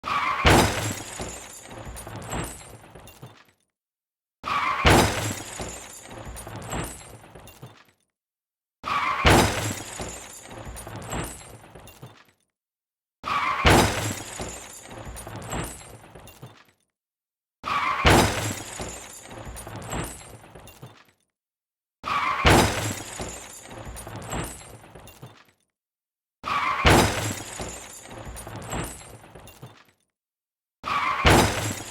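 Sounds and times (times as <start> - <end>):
glass breaking: 0.3 - 3.4, 26.7 - 29.8.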